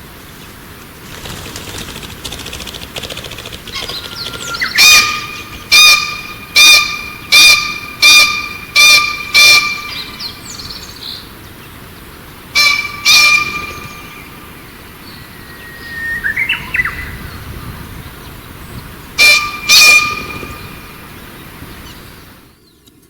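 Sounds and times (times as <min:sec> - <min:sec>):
faint bird chirping: 0:00.4 - 0:05.7
bird calling loud notes: 0:01.0 - 0:07.7.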